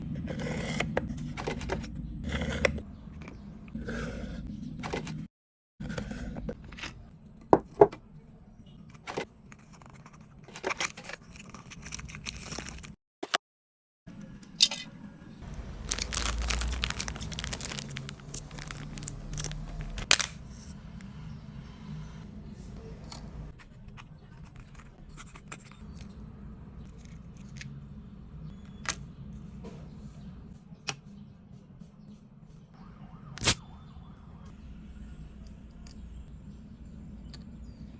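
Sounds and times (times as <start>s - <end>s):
crinkling and tearing: 15.6s - 20.4s.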